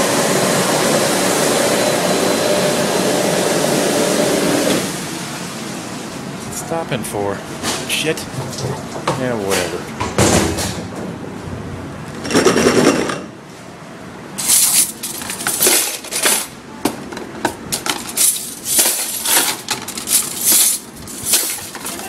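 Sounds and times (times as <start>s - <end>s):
dishes and cutlery clattering: 14.4s - 16.5s.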